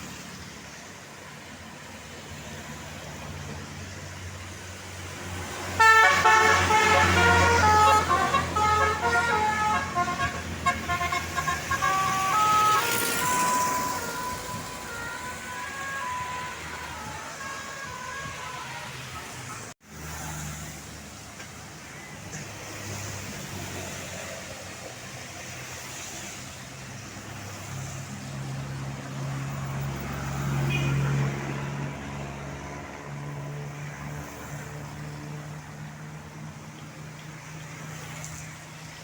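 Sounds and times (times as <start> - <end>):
large vehicle engine humming: 0.0 - 30.2
roadside traffic noise: 0.0 - 39.0.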